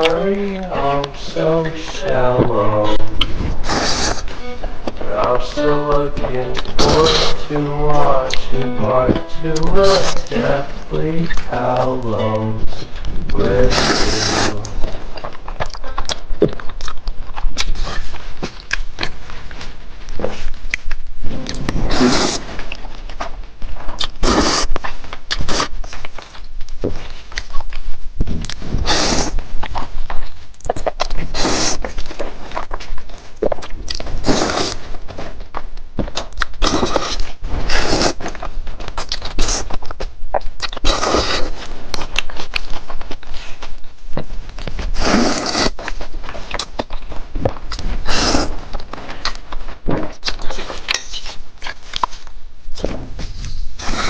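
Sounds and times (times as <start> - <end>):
slurping noodles: 0.0 - 4.4, 6.0 - 8.5, 13.1 - 15.0, 21.3 - 22.7, 24.2 - 24.7, 28.7 - 29.4, 31.2 - 32.0, 34.0 - 34.8, 36.6 - 38.4, 40.7 - 41.6, 44.9 - 46.0, 48.0 - 48.6, 53.8 - 54.0
wet chewing with lip smacks: 14.6 - 19.2, 23.9 - 34.8, 35.5 - 52.3.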